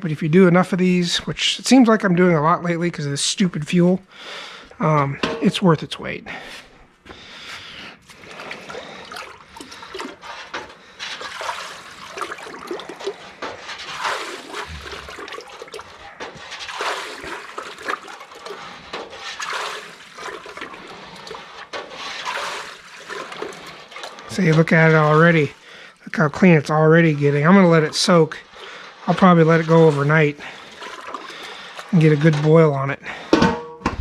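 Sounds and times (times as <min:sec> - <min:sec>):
solvent sloshing and gurgling: 0:02.6 - 0:33.6.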